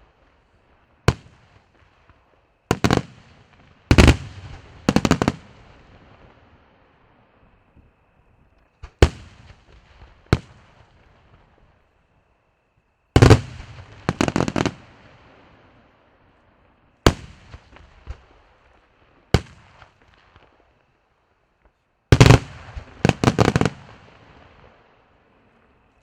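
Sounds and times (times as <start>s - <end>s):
fireworks crackling: 0.0s - 11.8s, 13.2s - 16.0s, 21.7s - 25.4s
fireworks bangs: 1.0s - 11.8s, 13.2s - 15.8s, 17.0s - 20.6s, 22.1s - 24.8s.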